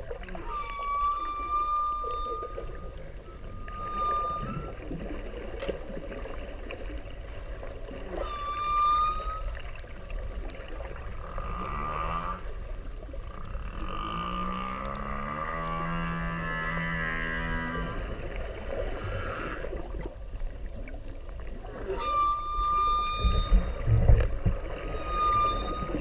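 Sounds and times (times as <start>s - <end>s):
whale calls: 0.0s - 5.8s, 7.8s - 20.1s, 21.5s - 26.0s
whale whistle: 0.2s - 5.3s, 8.0s - 10.1s, 21.6s - 26.0s.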